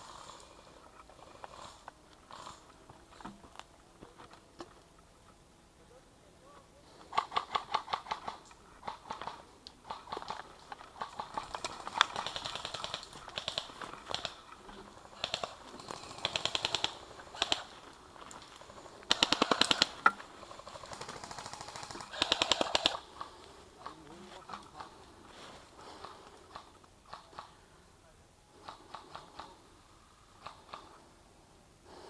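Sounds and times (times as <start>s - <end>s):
airsoft guns firing: 7.1s - 17.8s, 18.6s - 24.0s.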